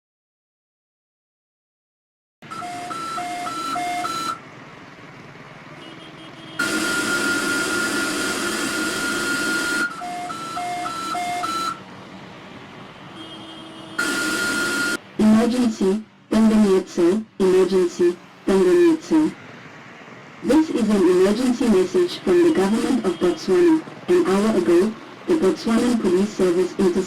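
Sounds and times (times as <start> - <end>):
alternating high and low beeps: 2.5 - 4.4, 14.0 - 15.0
long steady alert tone: 2.5 - 4.4, 6.6 - 11.8, 14.0 - 19.4.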